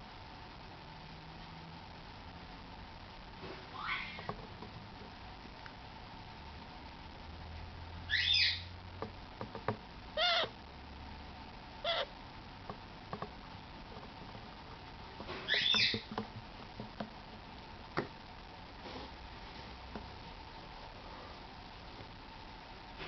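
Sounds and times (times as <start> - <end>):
parrot chick calling: 8.1 - 8.6, 10.2 - 10.6, 11.8 - 12.1, 15.5 - 16.1.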